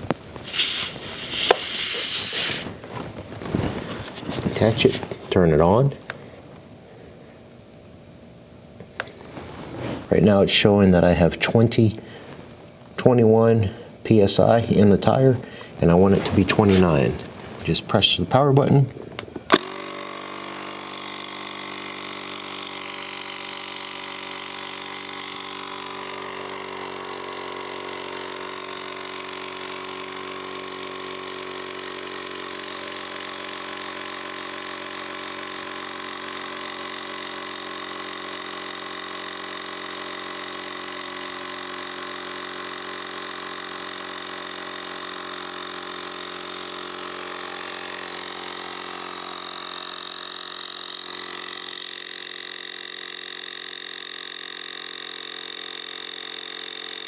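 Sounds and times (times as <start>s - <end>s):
small air compressor running: 0.0s - 5.3s, 19.5s - 57.0s.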